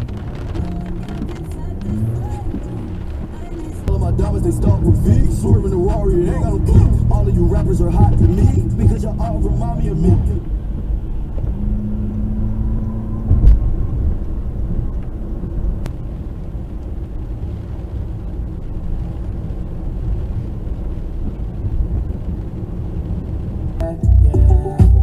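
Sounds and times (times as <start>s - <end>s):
car driving on road: 0.0s - 25.0s
music with a beat: 3.9s - 10.4s, 23.8s - 25.0s.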